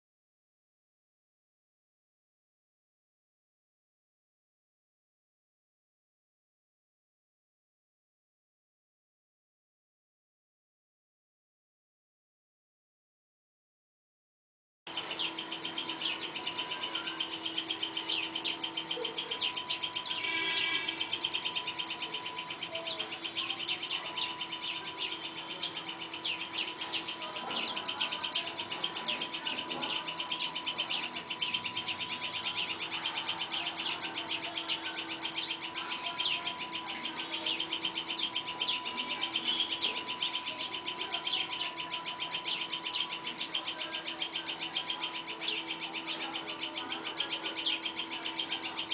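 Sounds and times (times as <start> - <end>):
rapid high-pitched trill: 14.9 - 43.5
birds chirping: 14.9 - 48.9.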